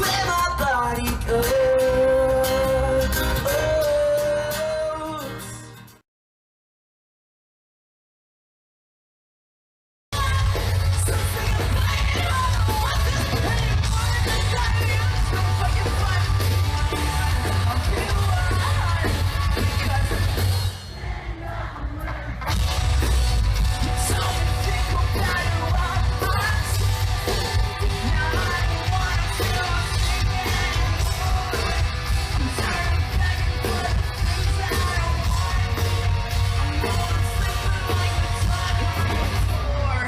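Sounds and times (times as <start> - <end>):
person singing: 0.0 - 5.8, 10.2 - 22.7, 23.7 - 40.0
live music with heavy bass: 0.0 - 6.0, 10.1 - 40.0.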